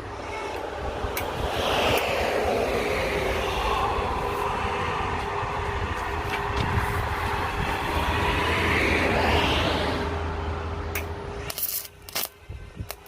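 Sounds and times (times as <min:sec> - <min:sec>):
welding arc crackling and buzzing: 0:11.5 - 0:13.0.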